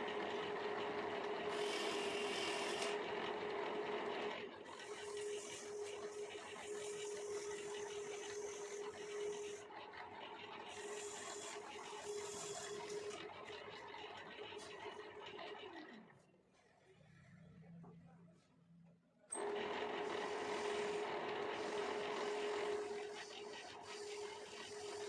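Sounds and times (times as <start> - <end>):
wood lathe humming: 0.0 - 9.7, 10.7 - 13.2, 19.4 - 25.0
tool scraping spinning wood: 1.5 - 3.0, 19.4 - 25.0.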